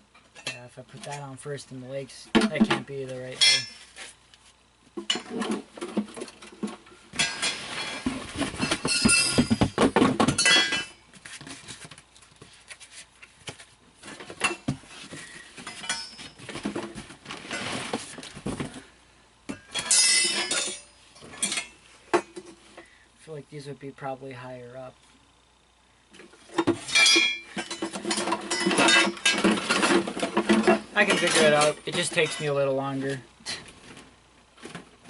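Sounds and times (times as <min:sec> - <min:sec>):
metal poles clattering: 0:02.4 - 0:04.0, 0:05.0 - 0:11.0, 0:15.6 - 0:17.8, 0:19.5 - 0:22.4, 0:26.6 - 0:32.6.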